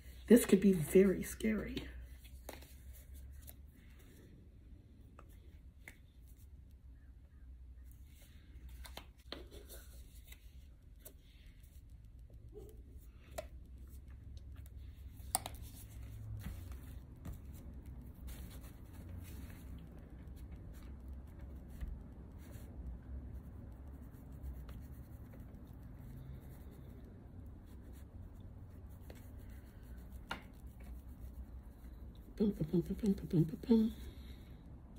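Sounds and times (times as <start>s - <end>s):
low steady hum: 0.0s - 34.9s
paintbrush scratching on palette: 14.8s - 32.0s.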